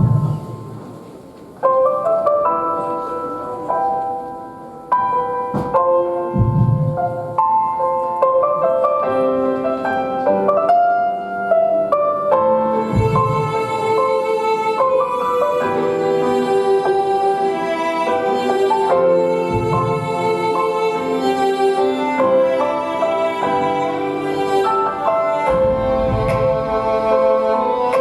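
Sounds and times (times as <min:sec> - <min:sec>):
piano music: 0:00.0 - 0:28.0
deep low thud: 0:06.4 - 0:07.2, 0:13.0 - 0:13.6, 0:25.6 - 0:26.9.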